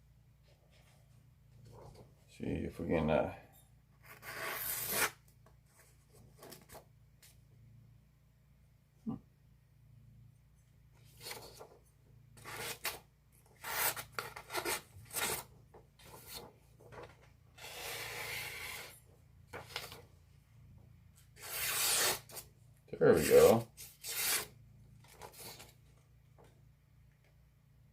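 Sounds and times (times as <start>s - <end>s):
knife scraping through material: 4.0s - 5.2s, 12.4s - 13.0s, 13.6s - 15.5s, 17.6s - 19.0s, 21.4s - 22.4s, 23.1s - 24.5s.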